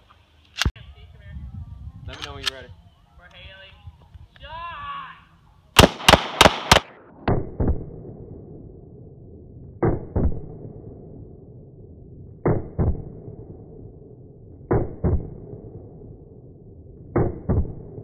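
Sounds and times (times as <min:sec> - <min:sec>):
gunshots with echo: 0:05.8 - 0:07.9.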